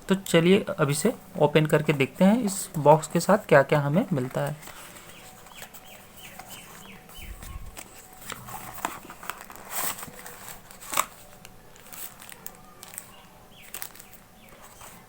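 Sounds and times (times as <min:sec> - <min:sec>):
box being opened and handled: 0:04.2 - 0:15.0
bird chirping: 0:04.7 - 0:07.7.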